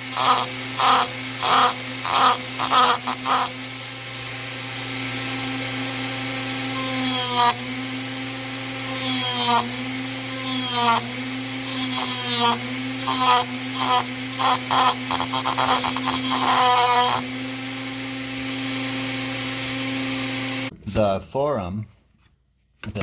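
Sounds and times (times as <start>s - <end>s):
rotary tool grinding metal: 0.0s - 3.9s, 5.3s - 18.0s.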